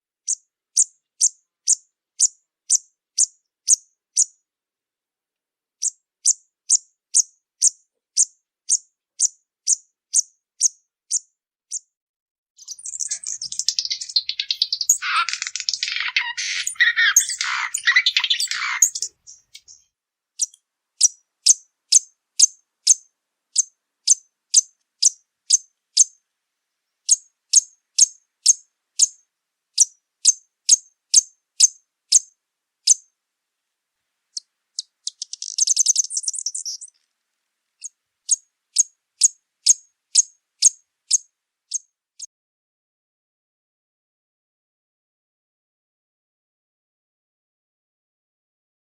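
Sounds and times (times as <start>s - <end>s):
hummingbird twittering: 12.6s - 19.8s, 34.8s - 36.9s
hummingbird chip notes: 12.7s - 19.8s.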